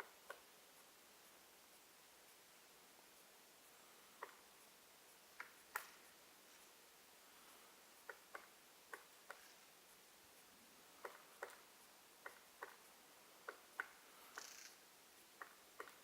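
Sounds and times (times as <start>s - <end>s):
woodpecker pecking at wood: 8.0s - 9.6s, 10.9s - 12.8s, 13.4s - 14.7s, 15.4s - 16.0s.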